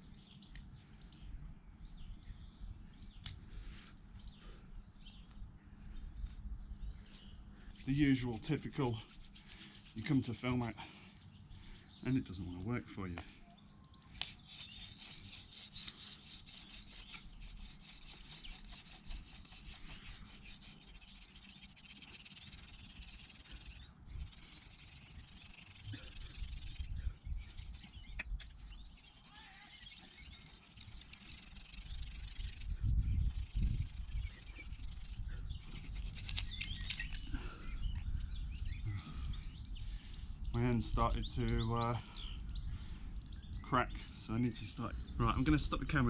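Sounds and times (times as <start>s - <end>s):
birds chirping: 0.0s - 46.0s
wood scraping on wood: 14.2s - 26.8s.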